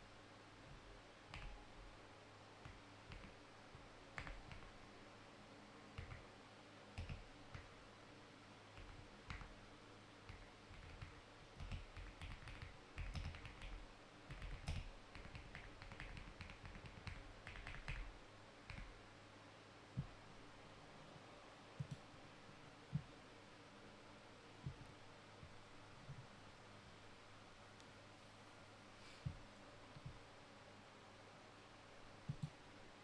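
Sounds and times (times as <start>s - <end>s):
typing on computer keyboard: 1.3s - 1.6s, 2.6s - 3.4s, 4.1s - 4.7s, 6.0s - 6.3s, 7.0s - 7.8s, 8.7s - 9.6s, 10.3s - 19.0s.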